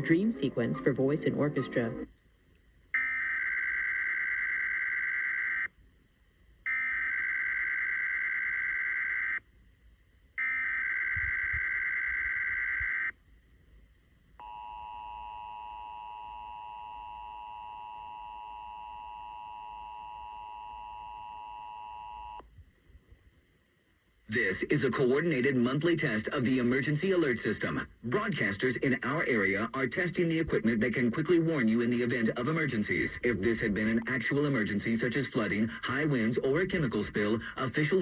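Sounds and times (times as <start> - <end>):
warbling data tones: 3.0 - 5.7, 6.7 - 9.4, 10.4 - 13.1, 14.4 - 22.4.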